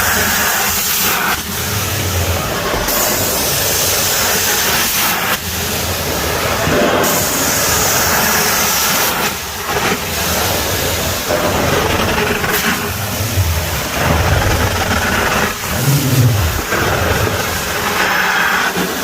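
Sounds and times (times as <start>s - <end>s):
vacuum suction hiss: 11.4s - 18.0s
low rumbling surges: 11.5s - 17.9s.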